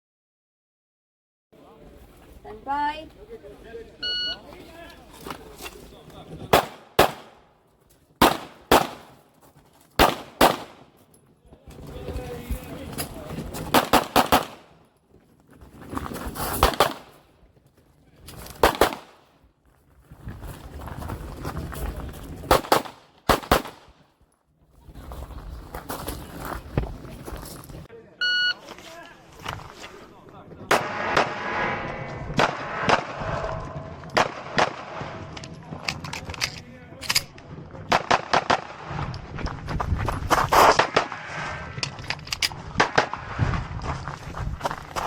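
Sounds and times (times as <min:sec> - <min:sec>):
pistol shots: 0:06.5 - 0:07.4, 0:08.2 - 0:09.2, 0:10.0 - 0:10.9, 0:13.7 - 0:14.8, 0:16.6 - 0:17.2, 0:18.6 - 0:19.2, 0:22.5 - 0:23.9, 0:30.7 - 0:31.6, 0:34.2 - 0:35.3.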